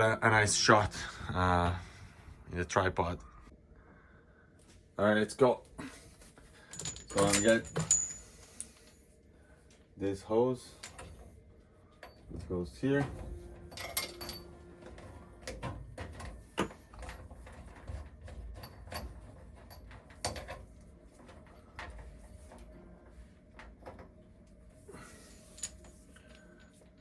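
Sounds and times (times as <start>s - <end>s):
hose fittings clicking and knocking: 13.8s - 22.6s.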